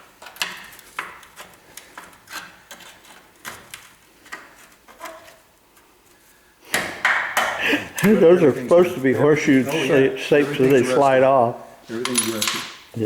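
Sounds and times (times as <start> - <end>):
hand tools clinking on steel: 12.0 - 12.8.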